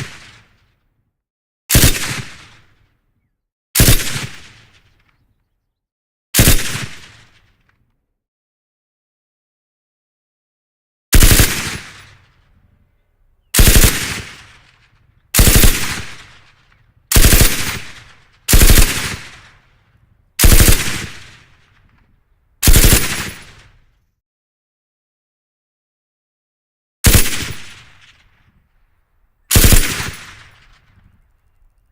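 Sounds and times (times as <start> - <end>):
machine gun bursts: 11.2 - 12.0, 13.6 - 14.4, 15.4 - 16.3, 17.1 - 19.3, 20.4 - 21.3, 22.6 - 23.6, 27.1 - 27.7, 29.5 - 30.4.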